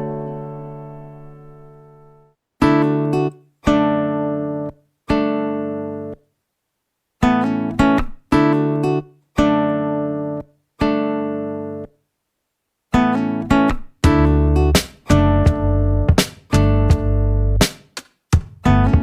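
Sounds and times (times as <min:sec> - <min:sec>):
guitar chords ringing: 0:00.0 - 0:06.2, 0:07.2 - 0:11.9, 0:12.9 - 0:17.6, 0:18.5 - 0:19.0.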